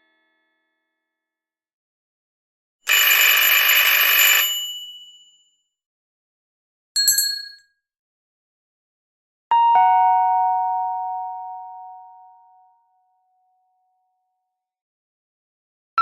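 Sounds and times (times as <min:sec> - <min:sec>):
doorbell ringing: 0:02.9 - 0:05.4.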